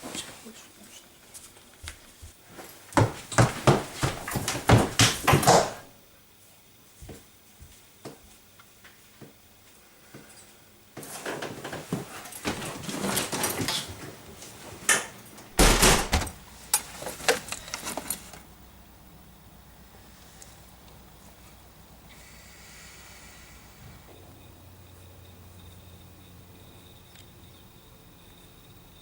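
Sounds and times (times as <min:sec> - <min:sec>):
door rattling and clattering: 0:03.0 - 0:05.8, 0:15.6 - 0:16.4
loud door thump: 0:03.0 - 0:05.9, 0:15.6 - 0:16.4
door clicks: 0:15.6 - 0:16.4.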